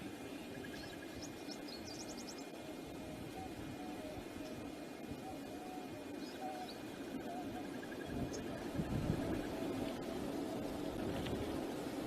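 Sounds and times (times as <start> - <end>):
wind buffeting microphone: 0.0 - 12.0
faint bird chirps: 0.3 - 10.7.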